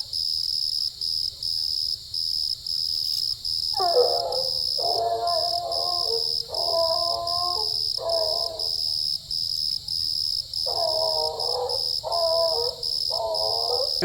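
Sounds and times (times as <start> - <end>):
insects trilling: 0.0 - 14.0
dog barking: 3.8 - 8.9, 10.6 - 14.0.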